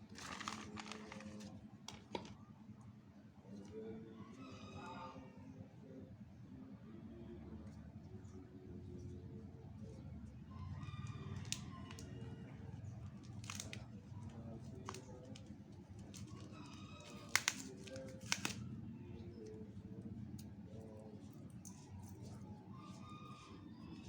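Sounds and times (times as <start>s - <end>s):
packaging crinkling: 0.1s - 2.3s, 13.2s - 13.9s, 14.8s - 18.6s
sharp plastic clicks: 14.8s - 18.7s.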